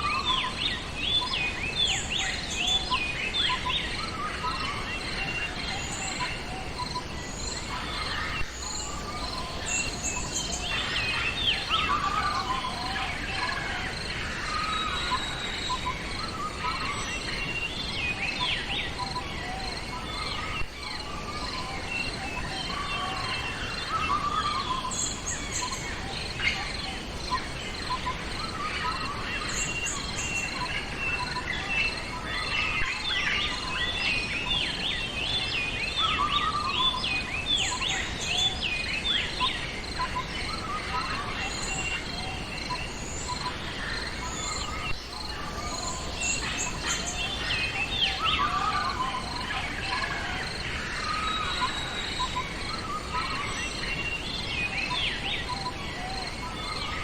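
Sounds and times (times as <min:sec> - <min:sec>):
songbirds chirping and trilling: 0:00.0 - 0:57.0
insects buzzing: 0:39.8 - 0:54.5.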